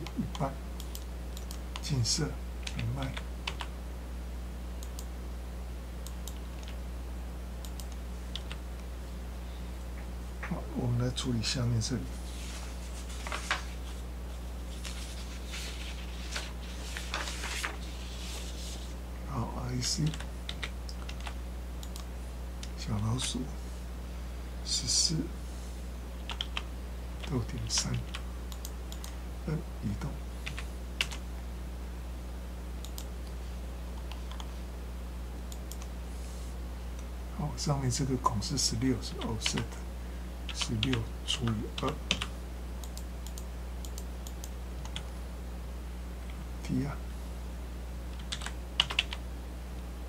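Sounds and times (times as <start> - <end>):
keyboard and mouse clicks: 0.0 - 1.9, 7.6 - 8.6
low electrical hum: 0.0 - 50.0.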